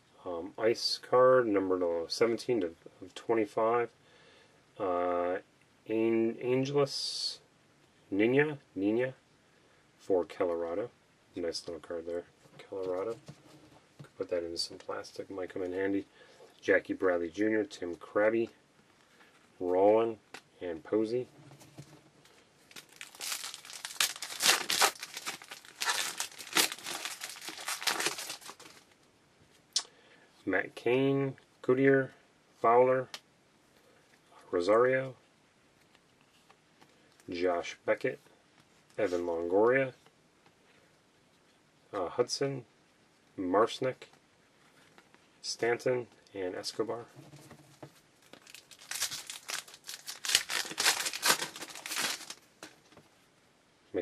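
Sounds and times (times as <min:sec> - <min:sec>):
wrapper tearing and crumpling: 0:22.7 - 0:28.8, 0:48.4 - 0:52.4.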